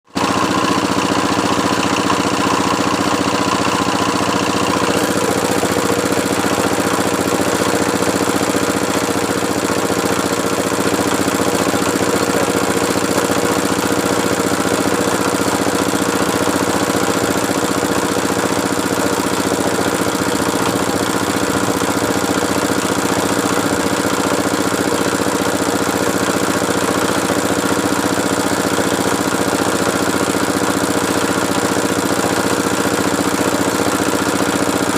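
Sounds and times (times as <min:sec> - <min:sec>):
drilling machine engine running: 0:00.1 - 0:34.9
higher engine tone: 0:00.2 - 0:25.2.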